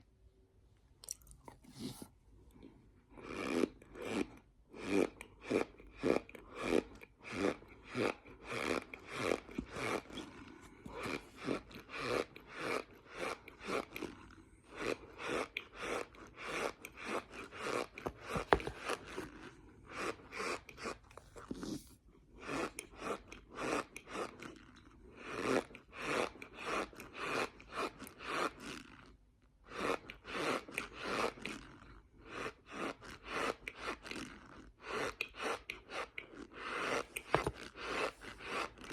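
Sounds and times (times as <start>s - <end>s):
squeaky crunchy chewing: 3.2s - 38.9s.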